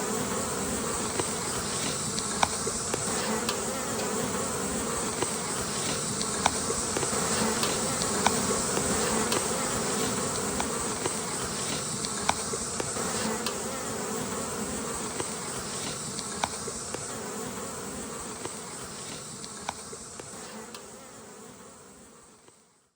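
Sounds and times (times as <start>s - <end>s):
honeybee swarm buzzing: 0.0s - 22.4s
sharp ticks: 5.2s - 9.6s.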